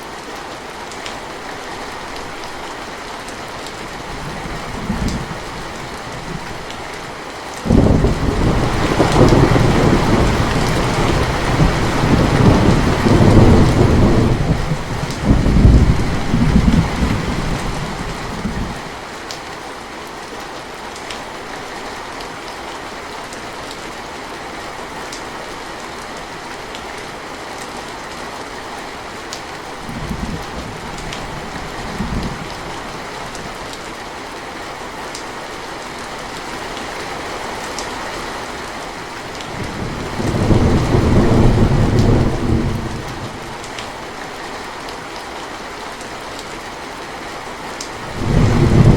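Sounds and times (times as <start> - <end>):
steady rainfall: 0.0 - 48.9
thunder rumbling: 7.7 - 18.9, 39.5 - 43.8, 48.0 - 48.9.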